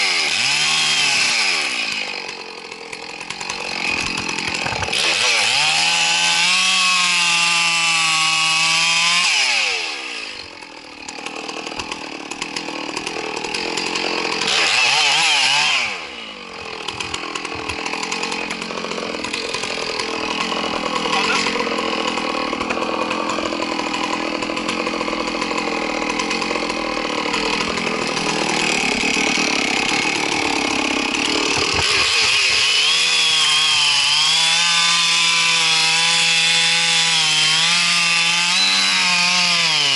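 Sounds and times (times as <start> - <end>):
chainsaw revving and cutting: 0.0 - 39.9.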